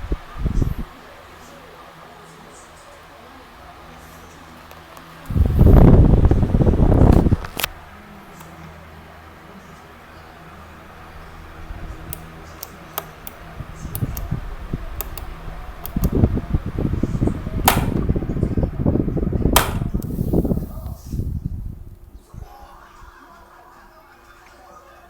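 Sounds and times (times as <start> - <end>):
airflow buffeting microphone: 0.0 - 1.0, 5.2 - 22.7
electric fan motor hum: 0.0 - 22.4
sharp clicks: 12.1 - 16.3, 17.6 - 18.1, 19.6 - 21.0.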